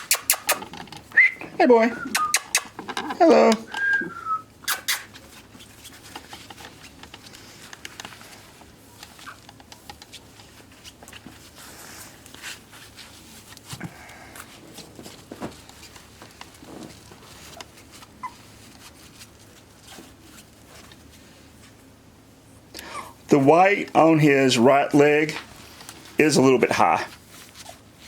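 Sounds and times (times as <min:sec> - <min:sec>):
puppy claws clicking on floor: 0:00.0 - 0:01.1, 0:02.1 - 0:03.2.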